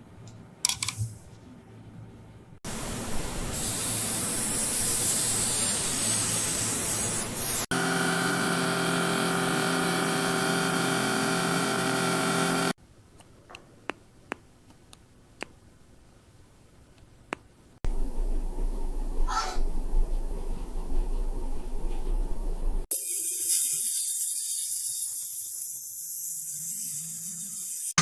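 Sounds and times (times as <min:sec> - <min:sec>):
loud spray-like hiss: 0:03.4 - 0:07.7
machine hum with fixed tones: 0:17.8 - 0:22.9.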